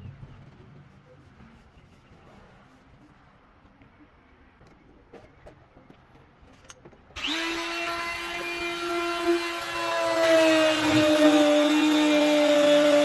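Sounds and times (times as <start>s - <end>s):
power tool motor whining: 7.2s - 13.0s.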